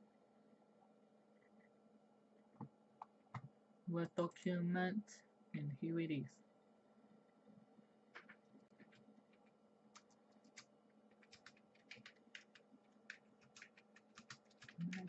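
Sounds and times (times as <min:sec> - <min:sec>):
low steady hum: 0:00.0 - 0:15.0
typing on computer keyboard: 0:08.2 - 0:15.0.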